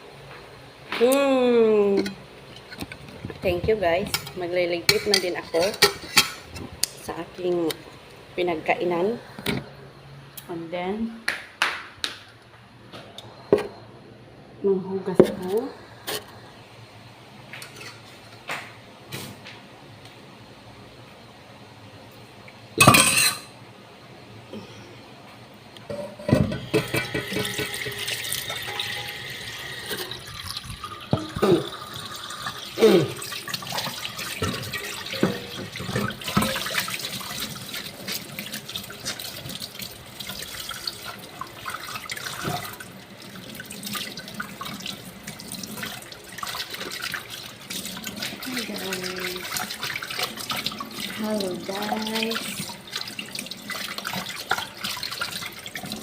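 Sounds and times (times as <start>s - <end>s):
dishes knocking in water: 26.2s - 29.1s, 33.8s - 36.8s
tap running with water splashing: 26.3s - 56.0s.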